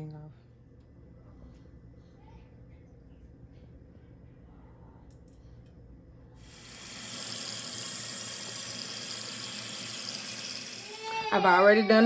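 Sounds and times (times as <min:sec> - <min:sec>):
water running from a tap: 0:06.4 - 0:11.6.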